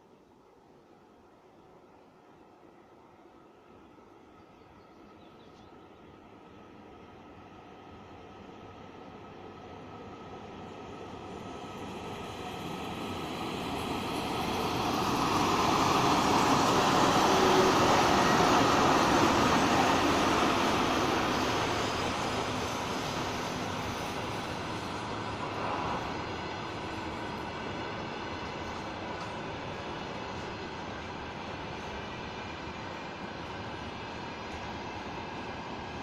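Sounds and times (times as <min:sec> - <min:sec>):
freight train passing: 0:05.8 - 0:36.0
train wheels on rails: 0:07.8 - 0:36.0.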